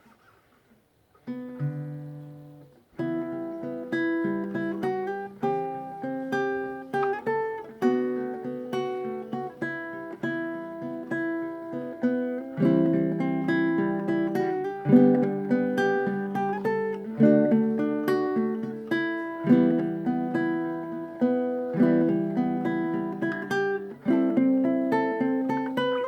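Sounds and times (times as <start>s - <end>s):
ukulele playing: 3.0s - 26.0s.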